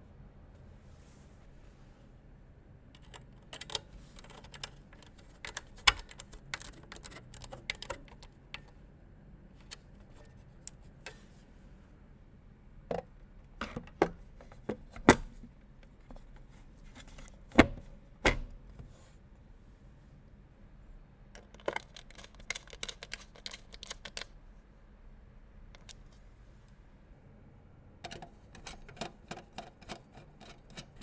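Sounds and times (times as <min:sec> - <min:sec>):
computer hardware clicks and knocks: 0:03.0 - 0:08.8, 0:28.0 - 0:31.0.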